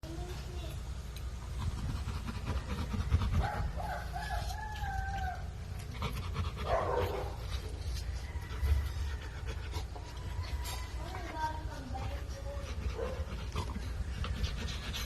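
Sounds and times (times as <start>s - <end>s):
rooster crowing: 3.4s - 5.6s, 7.9s - 11.2s.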